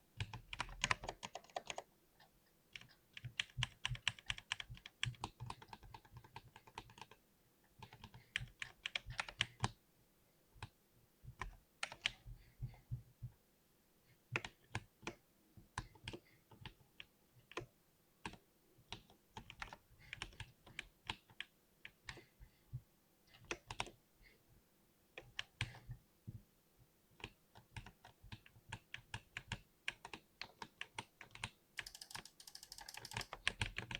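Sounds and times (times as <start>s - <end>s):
mechanical keyboard typing: 0.2s - 1.9s, 2.8s - 7.2s, 27.8s - 33.9s.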